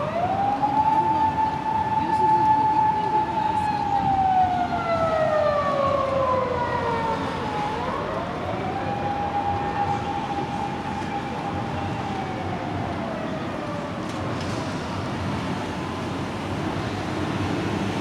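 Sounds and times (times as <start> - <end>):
police siren wailing: 0.0 - 14.4
rushing expressway traffic: 3.4 - 18.0.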